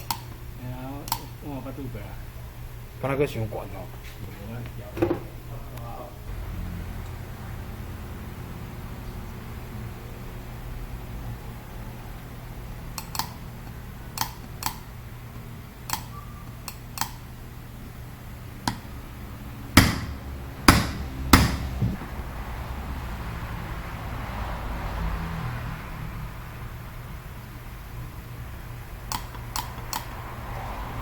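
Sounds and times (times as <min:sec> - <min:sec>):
light metal tool clicks: 0:01.0 - 0:01.3, 0:13.0 - 0:14.8, 0:15.8 - 0:17.2, 0:29.0 - 0:30.1
heavy metal knocks: 0:19.8 - 0:22.2.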